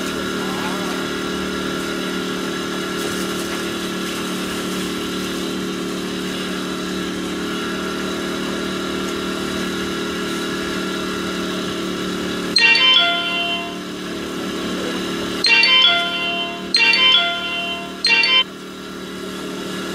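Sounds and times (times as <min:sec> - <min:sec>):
chime ringing: 0:12.6 - 0:14.0, 0:15.4 - 0:18.6.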